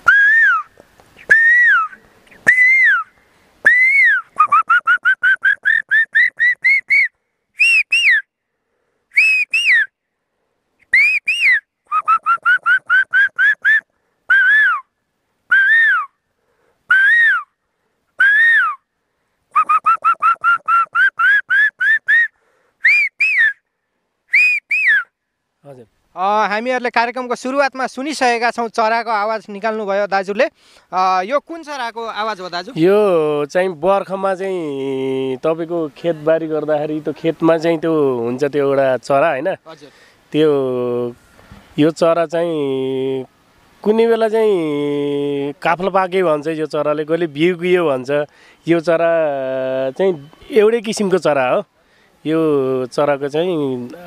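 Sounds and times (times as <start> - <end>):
man whistling bird call: 0.0 - 8.3, 9.1 - 10.0, 10.8 - 14.9, 15.5 - 16.2, 16.9 - 17.6, 18.2 - 18.9, 19.5 - 23.7, 24.3 - 25.2, 49.7 - 51.1.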